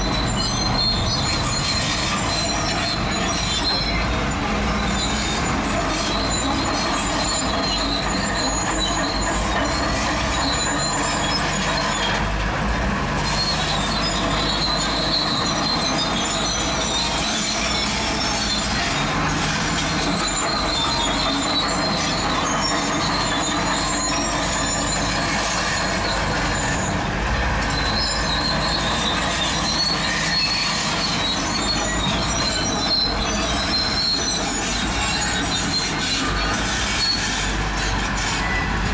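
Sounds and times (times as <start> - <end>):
bulldozer diesel engine running: 0.0 - 38.9
metallic squeal of steel tracks: 0.0 - 38.9.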